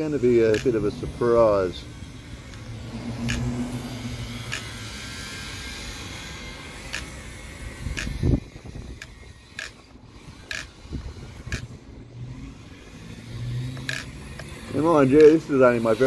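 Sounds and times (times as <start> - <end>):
electric motor whining: 0.0 - 16.0
sharp clicks: 2.5 - 3.5, 4.4 - 4.7, 7.9 - 10.8.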